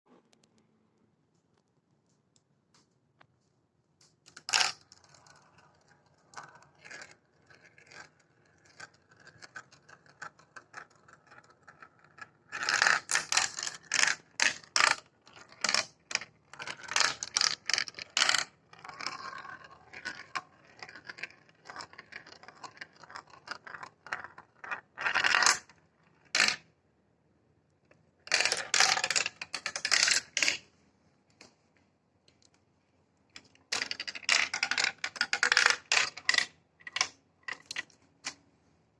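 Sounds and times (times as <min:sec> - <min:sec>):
marbles rolling through plastic track: 0:04.3 - 0:26.7, 0:28.2 - 0:30.6, 0:33.4 - 0:38.0.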